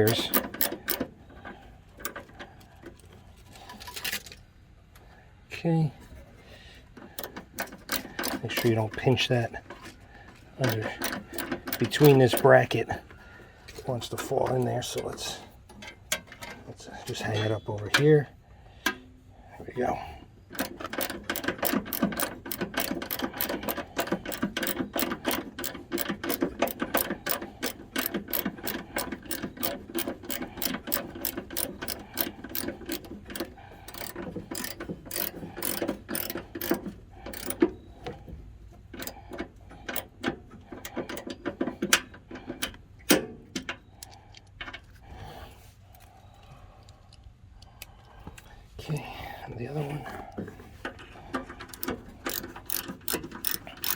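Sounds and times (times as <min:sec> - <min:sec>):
socket ratchet clicking: 0:00.0 - 0:01.1, 0:07.2 - 0:08.8, 0:10.6 - 0:12.6, 0:20.5 - 0:37.6, 0:39.0 - 0:39.2, 0:39.8 - 0:41.3, 0:51.7 - 0:53.9.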